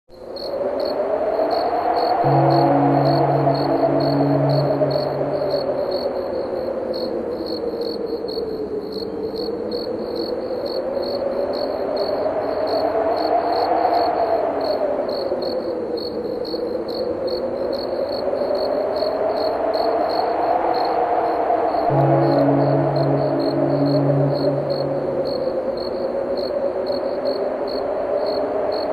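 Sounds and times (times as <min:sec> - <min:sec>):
crickets chirping: 0:00.1 - 0:28.9
wind: 0:00.1 - 0:28.9
low steady hum: 0:02.2 - 0:06.7, 0:21.9 - 0:26.4.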